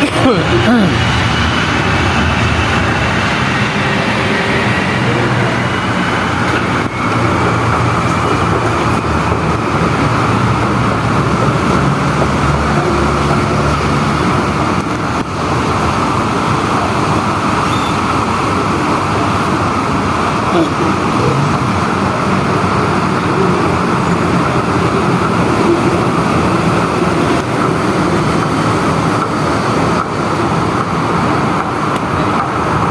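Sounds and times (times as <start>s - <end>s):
low hum: 0.0s - 17.3s
vehicle running: 0.0s - 32.9s.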